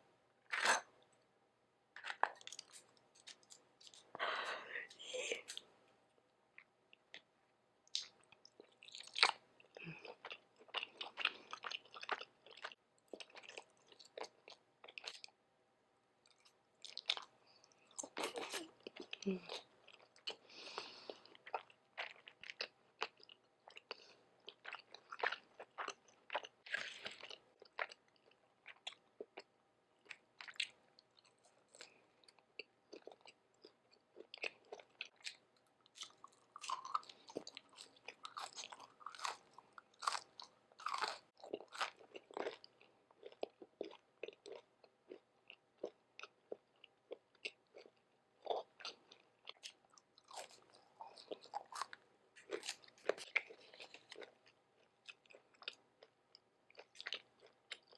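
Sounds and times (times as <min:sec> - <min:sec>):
crunchy chewing: 0:02.0 - 0:04.2, 0:07.9 - 0:15.3, 0:16.2 - 0:57.9.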